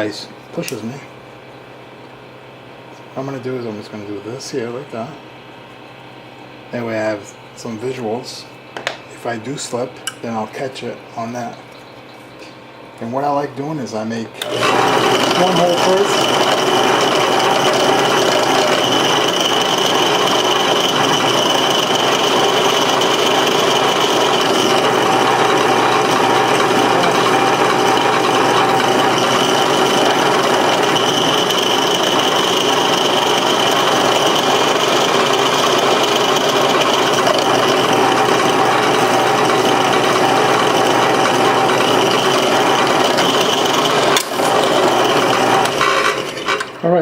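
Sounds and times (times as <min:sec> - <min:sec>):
drill bit grinding: 0:14.4 - 0:46.8
small power drill whining: 0:14.4 - 0:46.8.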